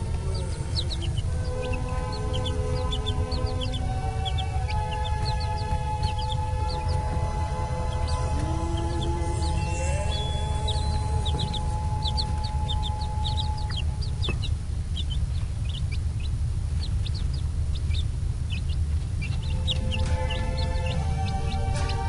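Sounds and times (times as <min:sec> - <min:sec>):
chicks peeping: 0:00.0 - 0:22.0
faint music: 0:00.0 - 0:22.0
steady low rumble: 0:00.0 - 0:22.0.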